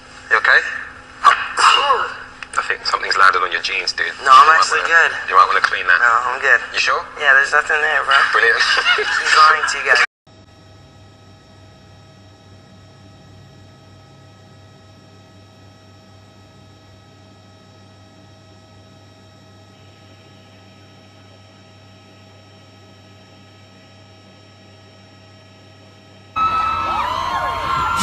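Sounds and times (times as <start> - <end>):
steady hum of held tones: 0.0 - 28.0
crowd cheering and screaming: 26.4 - 28.0.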